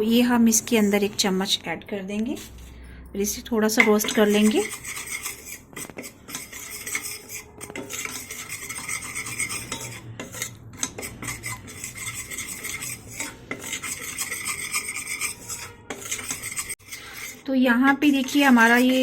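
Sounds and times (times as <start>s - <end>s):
utensil scraping a pan: 0.5s - 1.6s, 2.2s - 2.8s, 3.8s - 19.0s.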